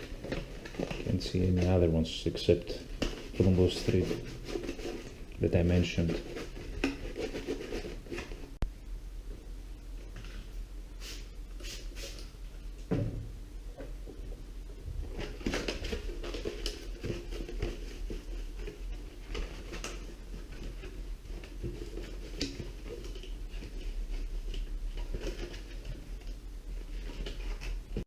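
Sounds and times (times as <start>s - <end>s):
scrubbing on plastic body: 2.7s - 8.5s
loud thump: 12.9s - 13.4s.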